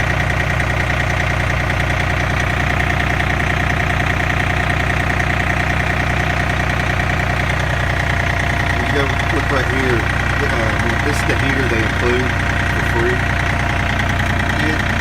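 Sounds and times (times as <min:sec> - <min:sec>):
diesel tractor engine idling: 0:00.0 - 0:15.0.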